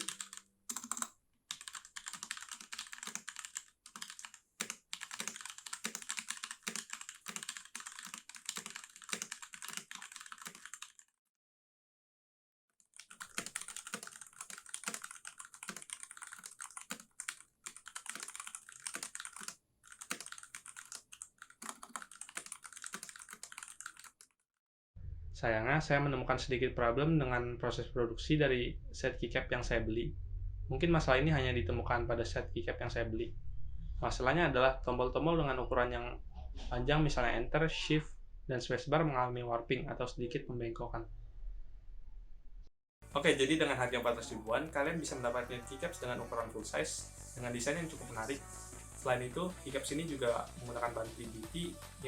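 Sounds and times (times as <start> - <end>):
mechanical keyboard typing: 0.0 - 11.0, 12.9 - 24.3.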